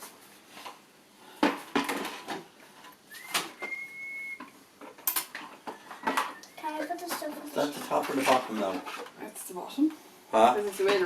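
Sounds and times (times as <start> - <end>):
toy parts knocking and clattering: 4.9 - 9.1.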